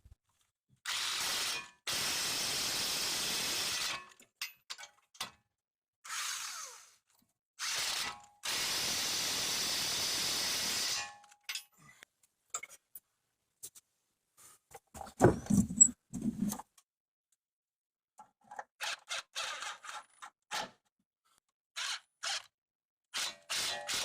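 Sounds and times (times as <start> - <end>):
tools clanking on metal: 15.0 - 16.4.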